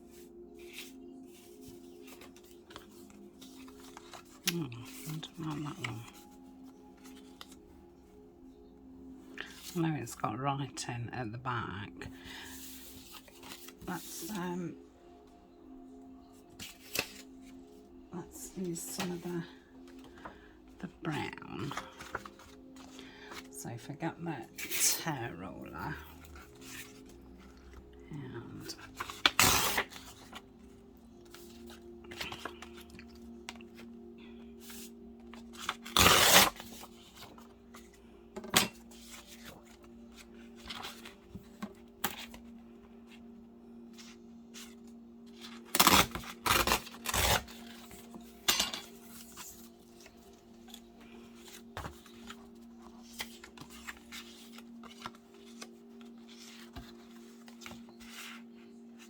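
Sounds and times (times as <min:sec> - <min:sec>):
paper rustling and tearing: 0:00.1 - 0:06.3, 0:12.3 - 0:14.4, 0:16.6 - 0:17.6, 0:21.6 - 0:23.5, 0:26.0 - 0:27.5, 0:28.6 - 0:30.4, 0:31.3 - 0:33.9, 0:34.6 - 0:37.9, 0:44.0 - 0:58.6.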